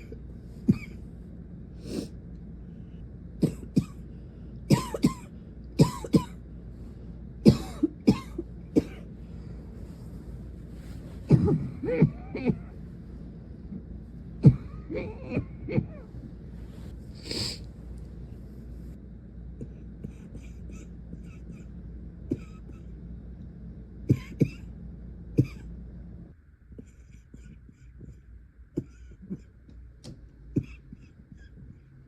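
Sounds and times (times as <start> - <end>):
woman coughing: 0.0 - 1.0, 3.4 - 4.0, 4.7 - 6.4, 7.4 - 9.1, 11.2 - 12.8, 14.4 - 16.1, 22.3 - 22.9, 24.1 - 24.7, 25.4 - 25.7, 28.7 - 29.6
steady background hum: 0.0 - 32.0.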